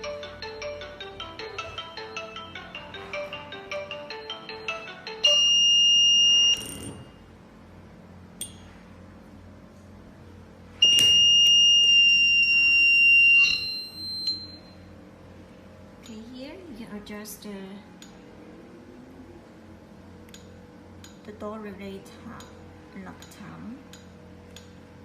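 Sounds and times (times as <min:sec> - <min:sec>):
electronic call chime ringtone: 0:00.0 - 0:06.6.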